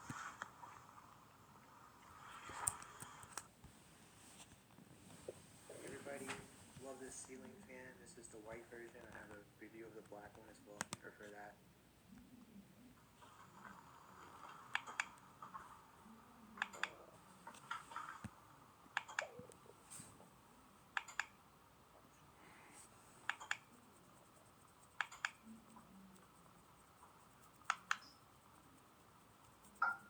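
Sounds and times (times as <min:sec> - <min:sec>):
small sharp clicks: 0:21.0 - 0:21.4, 0:25.0 - 0:25.6.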